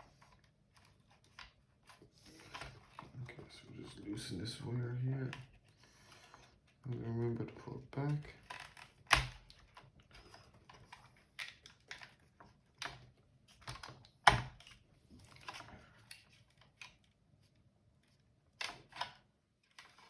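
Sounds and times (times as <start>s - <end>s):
plastic parts clicking and knocking: 7.9s - 17.1s, 18.6s - 20.0s.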